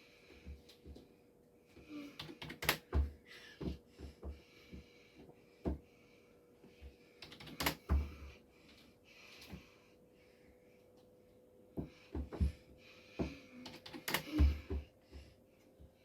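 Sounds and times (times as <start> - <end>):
faint steady hum: 0.0 - 16.0
typing on computer keyboard: 2.2 - 3.0, 7.2 - 7.9, 13.7 - 14.4.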